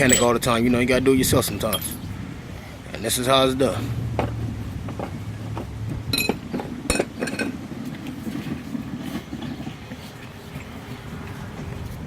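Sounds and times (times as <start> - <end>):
sharp ringing metal clinks: 0.0 - 0.7, 1.7 - 2.0
steel tools clinking: 0.0 - 0.8, 1.6 - 2.1.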